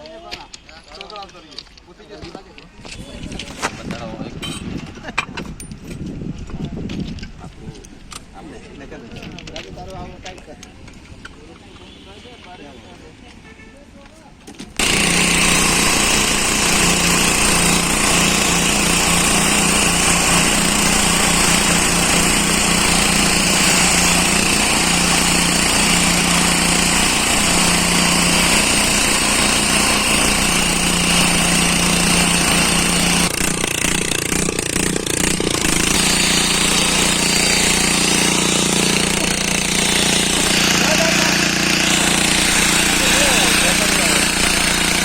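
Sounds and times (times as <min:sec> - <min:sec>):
small engine running steadily: 0:14.8 - 0:45.0.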